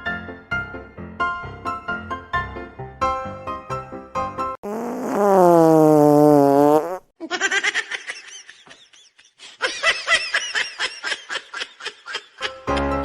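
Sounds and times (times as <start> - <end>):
fart sound: 4.6 - 7.1
snickering laughter: 7.2 - 12.9.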